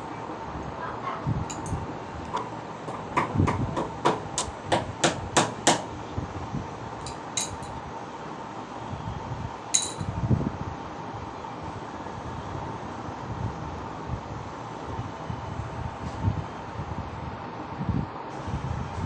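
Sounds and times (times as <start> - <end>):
hammer strikes: 1.5 - 6.0, 7.0 - 7.7.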